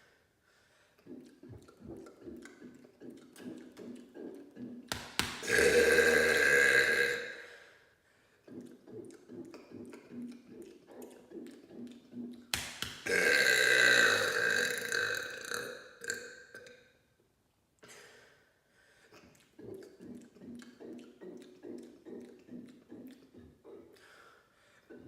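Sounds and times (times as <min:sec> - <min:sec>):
long loud burp: 0:05.4 - 0:07.6, 0:13.0 - 0:16.7.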